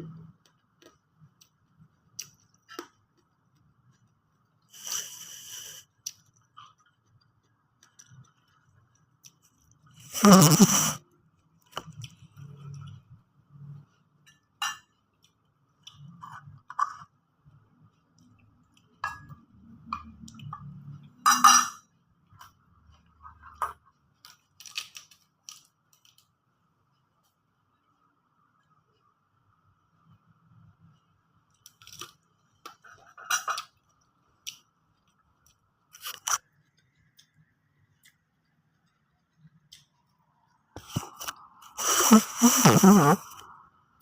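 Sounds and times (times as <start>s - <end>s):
soft chewing: 0.2s - 10.1s, 11.2s - 19.0s, 22.2s - 41.8s
spoon clinking and scraping on dish: 21.3s - 21.8s.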